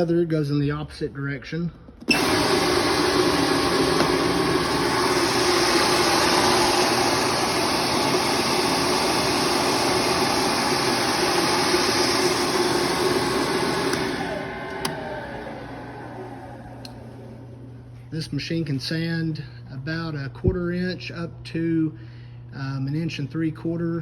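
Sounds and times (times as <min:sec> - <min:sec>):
orbital sanding machine running: 0:02.1 - 0:17.6.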